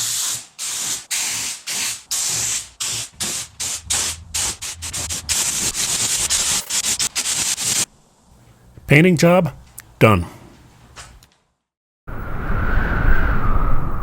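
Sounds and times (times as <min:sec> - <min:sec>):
spray paint hissing: 0:00.0 - 0:07.9.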